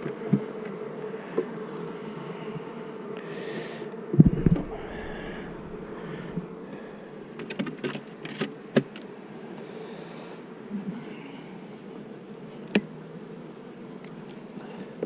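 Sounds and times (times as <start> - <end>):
honeybees buzzing: 0.0 - 15.0
sharp clicks and knocks: 4.2 - 4.8.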